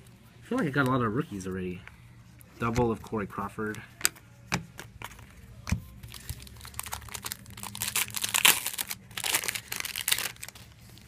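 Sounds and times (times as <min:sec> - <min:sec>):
wrapper crinkling: 0:06.0 - 0:11.0.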